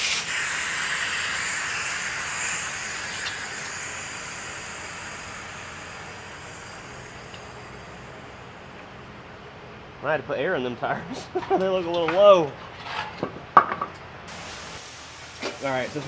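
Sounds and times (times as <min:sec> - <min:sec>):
compressed air hissing: 0:00.0 - 0:09.8, 0:14.3 - 0:16.0.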